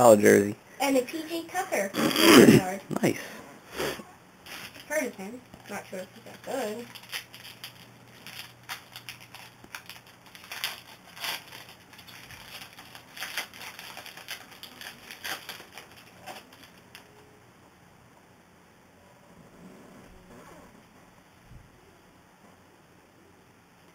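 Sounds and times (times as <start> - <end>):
trading cards rustling and sliding: 6.8 - 17.0.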